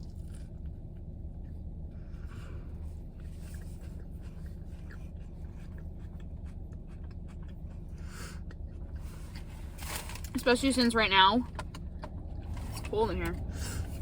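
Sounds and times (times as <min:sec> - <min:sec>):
person eating a sandwich: 0:00.0 - 0:10.2
low hum in car cabin: 0:00.0 - 0:14.0.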